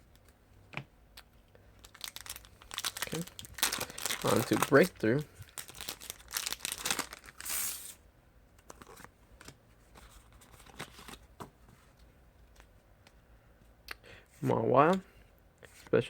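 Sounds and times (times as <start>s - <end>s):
foil wrapper torn and crinkled: 1.8s - 8.0s.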